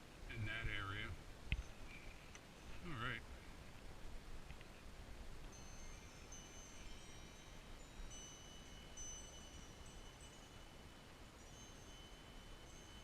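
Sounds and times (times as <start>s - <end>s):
wind chimes ringing: 1.6s - 3.0s, 5.5s - 13.0s.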